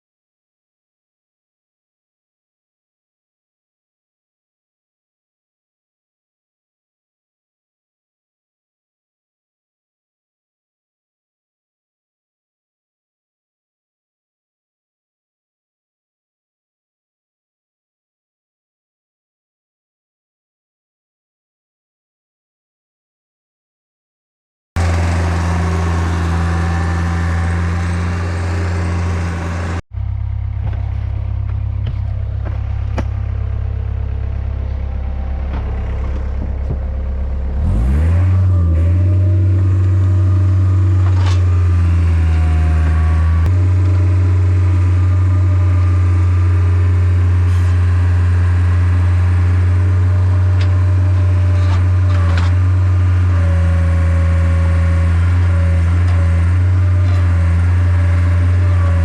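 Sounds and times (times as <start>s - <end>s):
machine engine running and revving: 24.8s - 59.0s.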